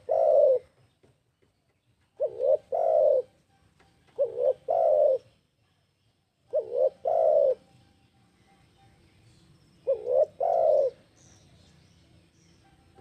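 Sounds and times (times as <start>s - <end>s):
dove cooing: 0.0s - 0.8s, 2.2s - 3.4s, 4.1s - 5.4s, 6.5s - 7.7s, 9.8s - 11.1s.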